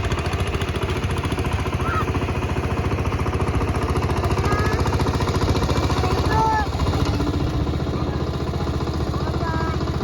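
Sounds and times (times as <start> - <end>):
small engine chugging: 0.0 - 10.0.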